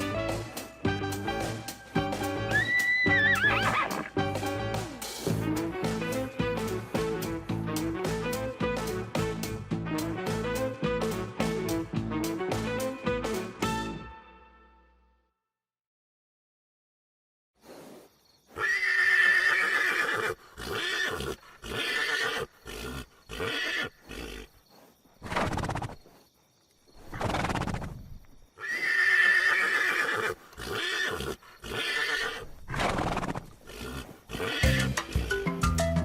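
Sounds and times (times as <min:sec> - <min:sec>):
horse whinnying: 0:02.3 - 0:04.2, 0:18.6 - 0:24.5, 0:25.2 - 0:26.0, 0:27.0 - 0:28.0, 0:28.6 - 0:35.0
horse blowing: 0:02.3 - 0:07.8, 0:17.6 - 0:26.2, 0:27.0 - 0:35.2.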